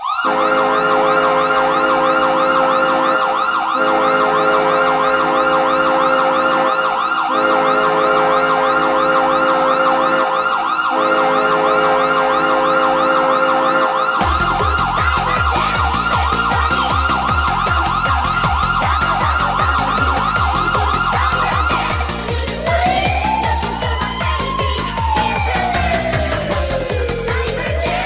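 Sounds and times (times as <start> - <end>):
wailing siren: 0.0 - 28.0
goal horn blasts: 0.2 - 9.4, 10.9 - 14.5
goal song with thumping beat: 14.2 - 28.0.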